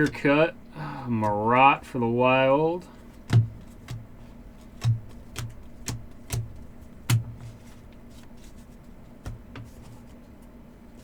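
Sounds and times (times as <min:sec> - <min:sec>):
cards tapping on table: 0:03.2 - 0:07.5.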